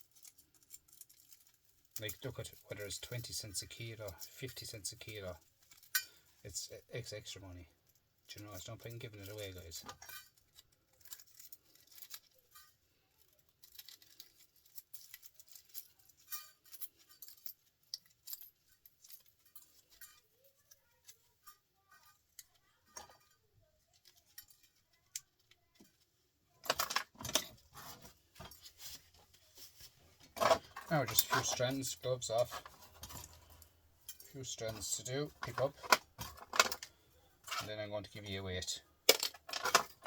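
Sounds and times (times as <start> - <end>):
metal scrap clicking and clinking: 30.2 - 37.7, 39.0 - 40.0.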